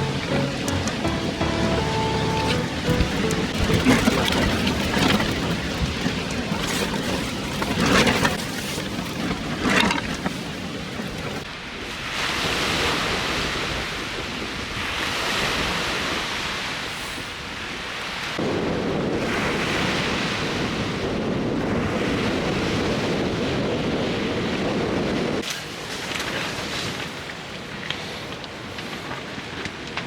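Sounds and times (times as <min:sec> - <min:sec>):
strong wind: 0:00.0 - 0:25.4
waves washing on shore: 0:00.0 - 0:30.0
wind buffeting microphone: 0:18.4 - 0:25.4.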